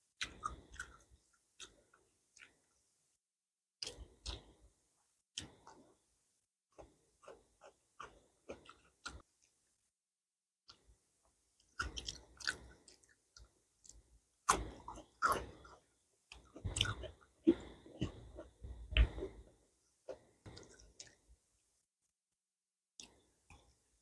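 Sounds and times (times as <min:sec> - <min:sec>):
close-up chewing: 0:00.2 - 0:02.7, 0:03.8 - 0:04.6, 0:06.7 - 0:09.6, 0:11.6 - 0:21.3.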